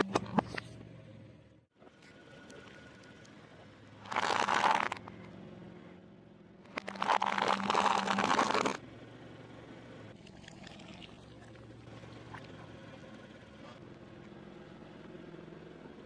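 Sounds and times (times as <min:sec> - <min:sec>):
crunchy food being chewed: 0:06.7 - 0:08.8.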